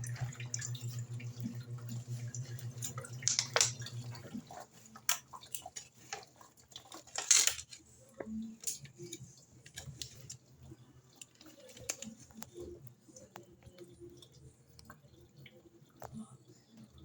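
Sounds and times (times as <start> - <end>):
faint low hum: 0.0 - 5.6
water and clothes sloshing: 0.0 - 15.8.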